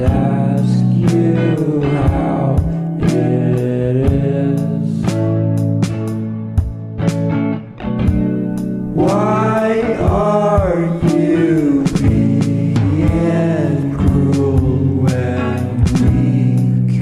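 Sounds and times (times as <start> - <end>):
person singing long held phrases: 0.0 - 5.1, 8.9 - 17.0
accompaniment with regular beat: 0.0 - 17.0.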